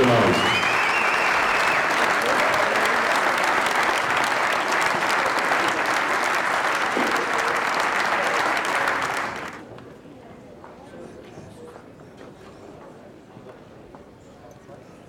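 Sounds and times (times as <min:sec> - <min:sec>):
audience applauding: 0:00.0 - 0:09.6.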